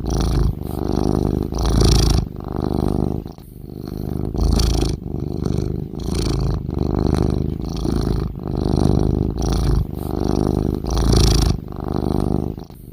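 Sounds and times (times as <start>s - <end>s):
cat purring loudly: 0.0s - 12.9s.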